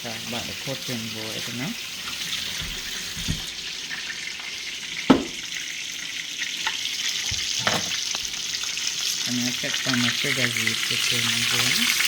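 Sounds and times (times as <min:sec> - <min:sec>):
chicken sizzling in hot oil: 0:00.0 - 0:12.0
sharp knock: 0:05.1 - 0:05.4.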